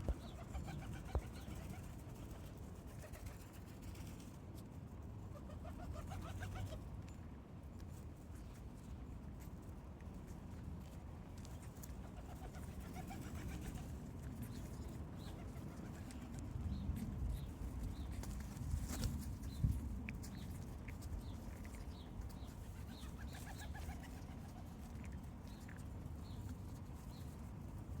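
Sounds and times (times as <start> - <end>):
pigeons calling: 0.0 - 2.4, 20.4 - 25.6.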